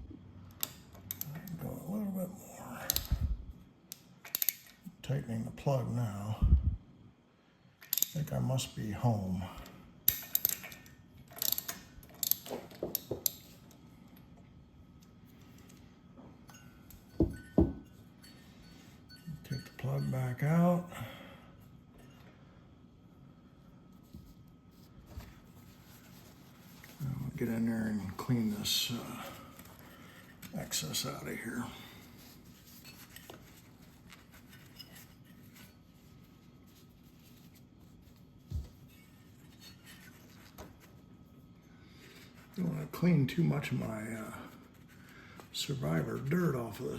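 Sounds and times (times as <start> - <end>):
metallic clicks of hand tools: 3.9 - 4.8, 7.8 - 8.2, 10.1 - 13.4.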